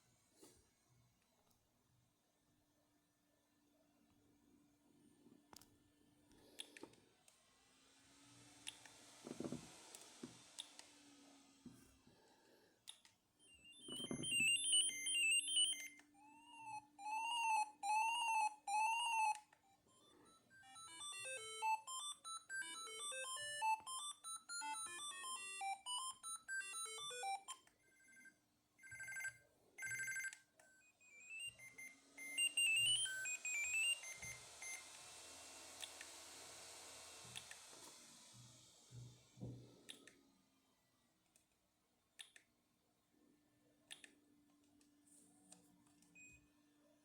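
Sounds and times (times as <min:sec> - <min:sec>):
phone ringtone beeping tunes: 0:13.4 - 0:34.8.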